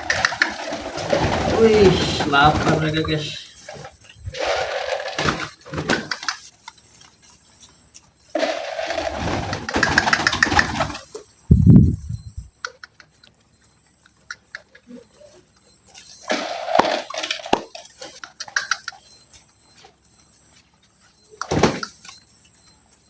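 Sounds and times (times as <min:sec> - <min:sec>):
pigeons pecking clicks: 0:00.0 - 0:11.3, 0:12.6 - 0:22.3
rustling bursts: 0:00.0 - 0:12.5.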